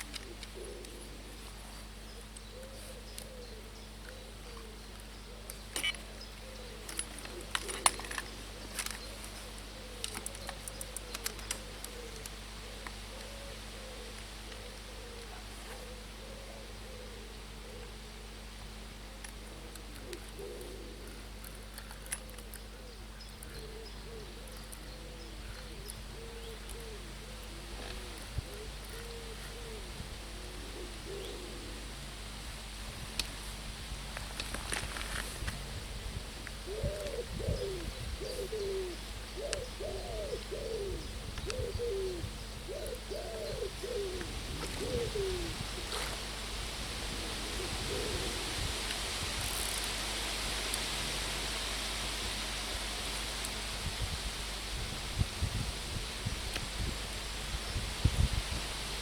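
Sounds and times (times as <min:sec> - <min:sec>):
pigeons cooing: 0:00.0 - 0:32.8, 0:35.6 - 0:49.4.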